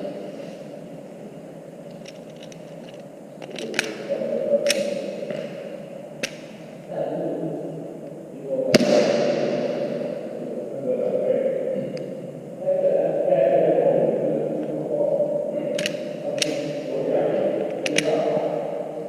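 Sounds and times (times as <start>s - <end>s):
sharp clicks and ticks: 1.9s - 4.9s, 15.7s - 16.7s, 17.7s - 18.2s
airsoft pistol shots: 8.7s - 10.0s.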